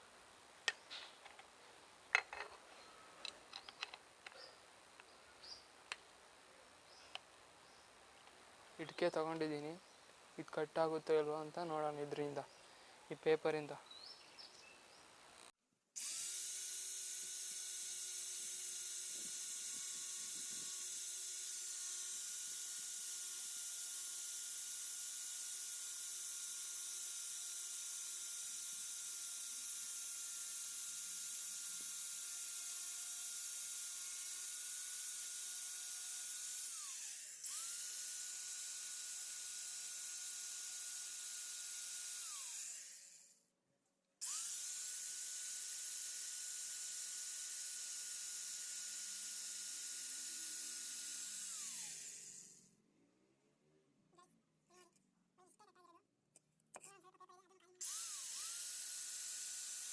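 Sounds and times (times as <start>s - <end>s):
angle grinder whining: 15.2s - 43.3s, 44.2s - 52.6s, 57.8s - 59.9s.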